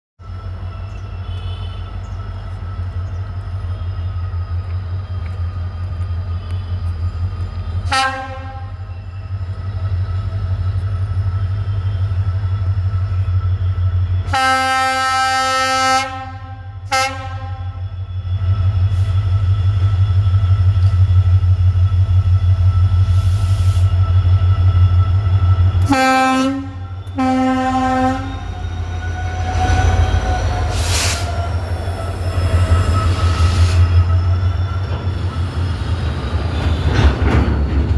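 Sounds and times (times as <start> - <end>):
diesel locomotive engine droning: 0.2 - 37.9
locomotive horn blasts: 1.2 - 2.0, 7.8 - 9.0, 14.2 - 17.9, 25.8 - 31.4.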